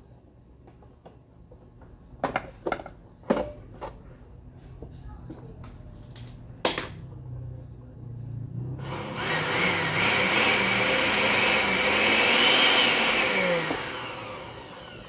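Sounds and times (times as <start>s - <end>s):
blender parts clicking and knocking: 9.1s - 15.0s.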